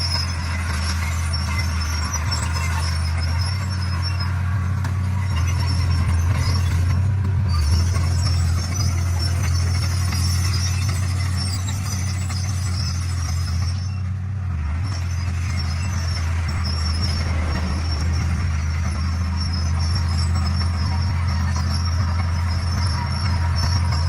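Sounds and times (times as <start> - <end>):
bulldozer diesel engine droning: 0.0 - 24.0.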